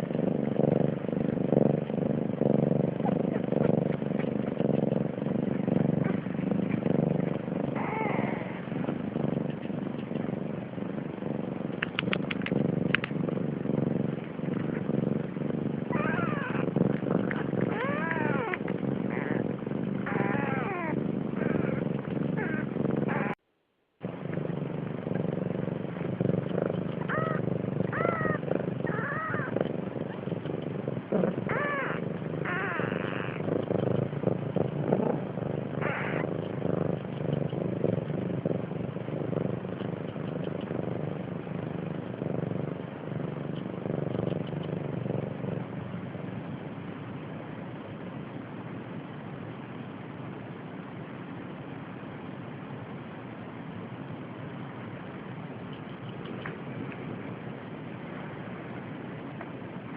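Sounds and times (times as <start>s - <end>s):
steady low rumble: 0.0s - 23.4s, 24.0s - 59.9s
cat meowing: 7.8s - 8.6s, 15.9s - 16.6s, 17.7s - 19.4s, 20.1s - 21.8s, 27.1s - 29.5s, 31.5s - 33.4s, 35.8s - 36.2s.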